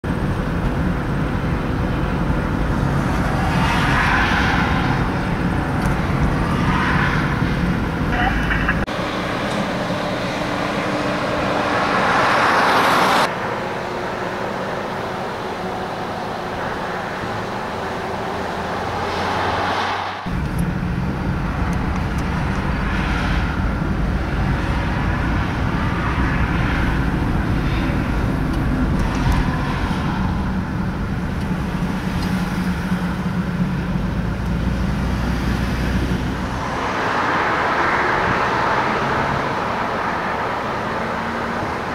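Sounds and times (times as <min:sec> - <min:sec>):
steady low engine hum: 0:00.0 - 0:03.7, 0:20.3 - 0:37.0
highway traffic passing: 0:00.0 - 0:41.9.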